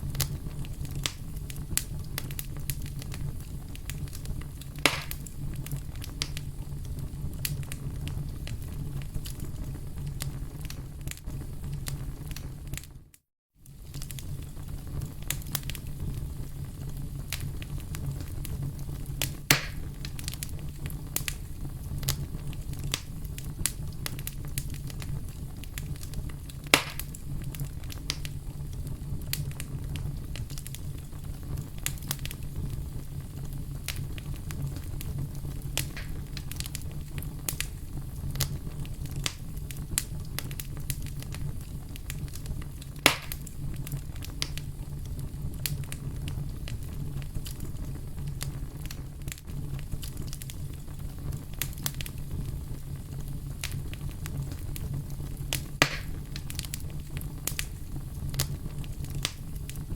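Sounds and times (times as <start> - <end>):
fire crackling: 0.0 - 59.9
fire pops: 0.0 - 59.9.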